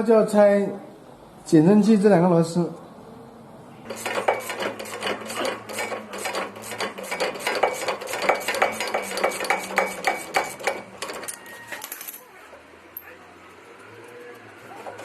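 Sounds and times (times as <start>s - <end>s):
ratchet wrench clicking rapidly: 3.9s - 11.2s.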